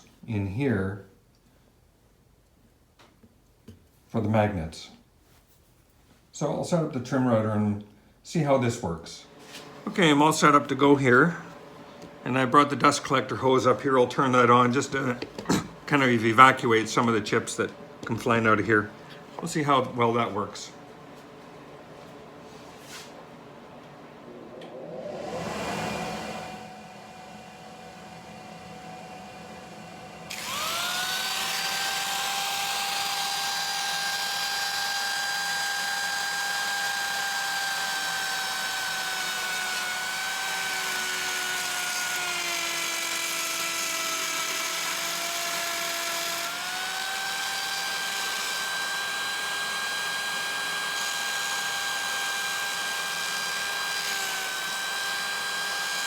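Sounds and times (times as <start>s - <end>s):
dust collector blower hum: 14.2s - 56.0s
trim router high whine: 24.2s - 56.0s.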